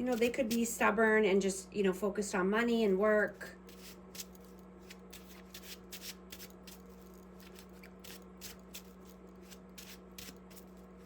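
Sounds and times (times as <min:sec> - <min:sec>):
low electrical hum: 0:00.0 - 0:11.0
cards shuffling: 0:03.7 - 0:11.0.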